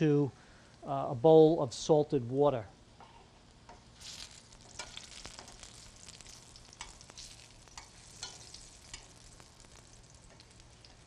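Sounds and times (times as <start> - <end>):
eggplant sizzling in frying: 3.3 - 11.0
sharp crackles and pops: 3.4 - 11.0.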